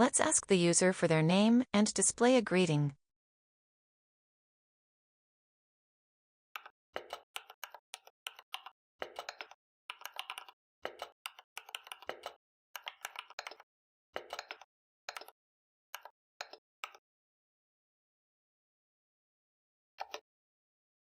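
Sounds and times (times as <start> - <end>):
typing on computer keyboard: 6.6 - 15.4, 16.0 - 17.0, 20.0 - 20.2.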